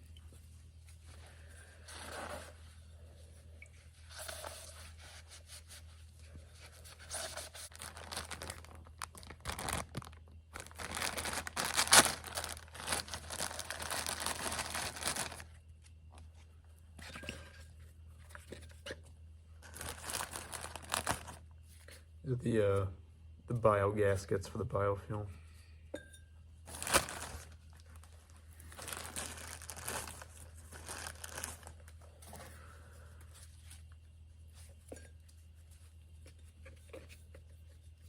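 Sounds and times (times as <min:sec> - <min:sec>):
paper towel rubbing and crumpling: 0:04.0 - 0:15.5, 0:26.7 - 0:27.6, 0:28.6 - 0:31.8.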